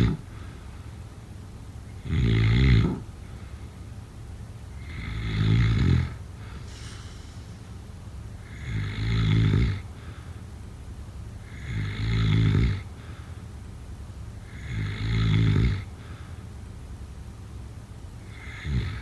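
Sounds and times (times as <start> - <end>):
person snoring loudly: 0.0 - 0.3, 2.0 - 3.0, 4.8 - 6.2, 8.5 - 9.8, 11.5 - 12.8, 14.5 - 15.9, 18.3 - 19.0.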